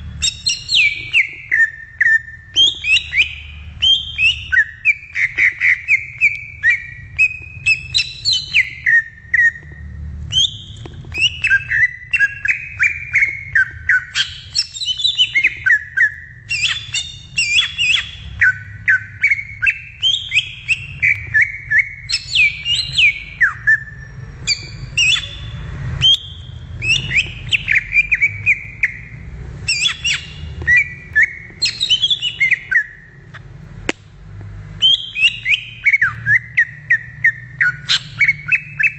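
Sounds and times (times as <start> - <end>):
bird singing whistled notes: 0.0 - 33.2, 34.8 - 38.9
low steady rumble: 0.0 - 38.9.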